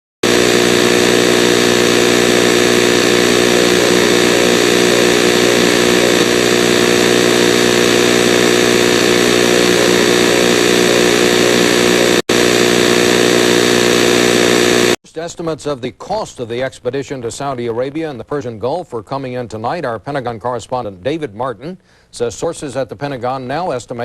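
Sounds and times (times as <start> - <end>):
loud buzzing drone: 0.2 - 15.0.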